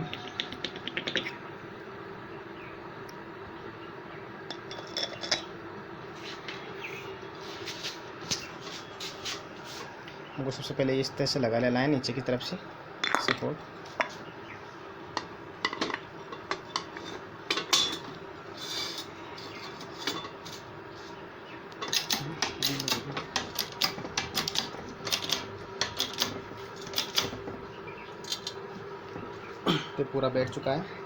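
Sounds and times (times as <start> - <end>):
metal parts clinking and tapping: 15.2 - 20.6, 21.8 - 27.5, 28.2 - 28.6.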